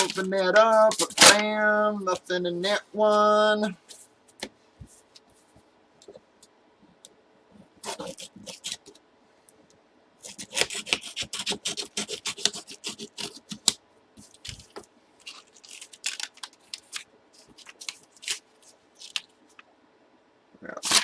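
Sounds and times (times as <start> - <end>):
crackles and taps: 4.3 - 7.2
packaging crinkling and rustling: 13.5 - 19.7.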